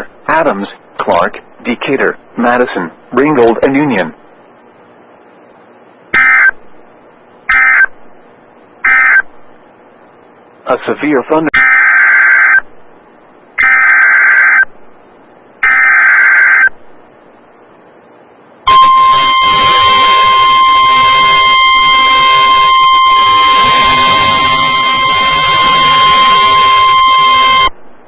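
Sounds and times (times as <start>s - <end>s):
steady warning alarm tone: 6.2s - 6.6s, 7.5s - 8.0s, 8.8s - 9.3s, 11.6s - 12.7s, 13.6s - 14.7s, 15.6s - 16.7s, 18.7s - 27.7s
buzzy digital data bursts: 18.7s - 27.7s.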